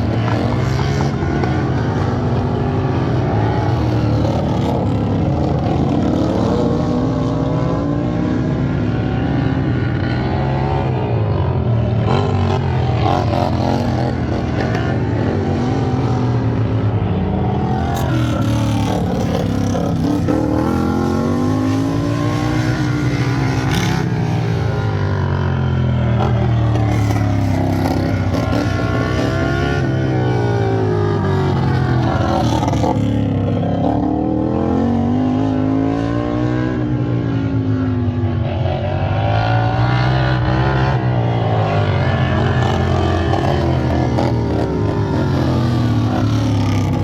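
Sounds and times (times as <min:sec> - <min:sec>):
lawn tractor engines revving: 0:17.5 - 0:34.2, 0:41.4 - 0:47.0.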